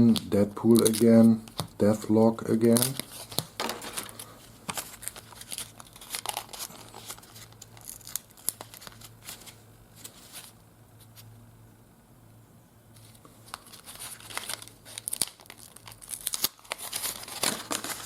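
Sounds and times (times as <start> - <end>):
wrapper crinkling and tearing: 0.0 - 1.7, 2.5 - 10.6, 13.0 - 18.0.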